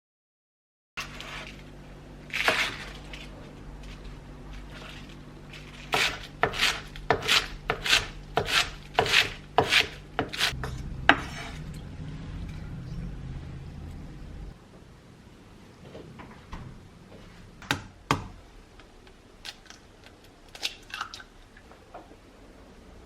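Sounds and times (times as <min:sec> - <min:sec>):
knife scraping and cutting: 0:01.0 - 0:01.7, 0:02.3 - 0:11.8
low steady hum: 0:01.0 - 0:23.0.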